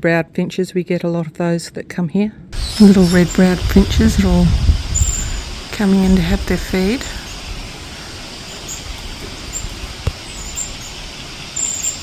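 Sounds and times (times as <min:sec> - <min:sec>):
outdoor background noise: 0:00.0 - 0:12.0
finches chirping: 0:02.6 - 0:12.0.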